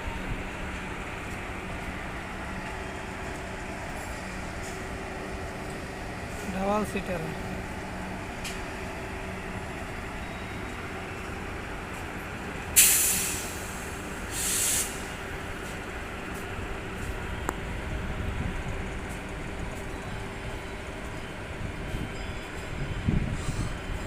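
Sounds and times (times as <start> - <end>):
train air brakes hissing: 12.8 - 15.8, 23.3 - 23.9.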